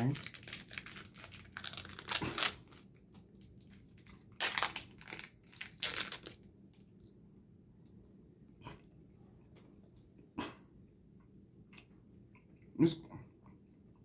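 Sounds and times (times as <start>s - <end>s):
plastic wrapper crinkling: 0.0s - 6.5s.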